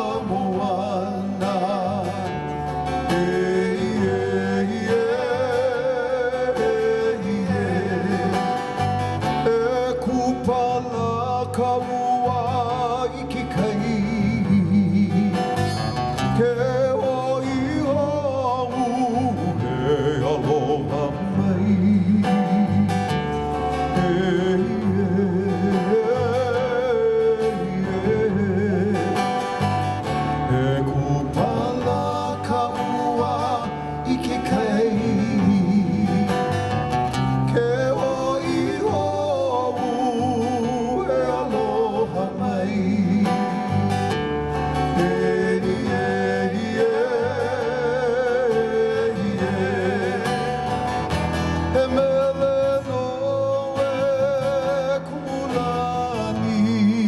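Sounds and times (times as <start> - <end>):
person singing with vibrato: 0.0 - 57.0
strummed acoustic guitar: 0.0 - 57.0.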